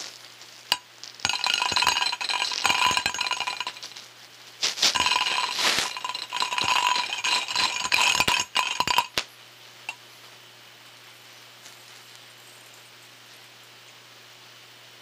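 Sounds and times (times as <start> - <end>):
steady hiss: 0.0 - 15.0
small objects rattling and clinking: 0.7 - 9.2.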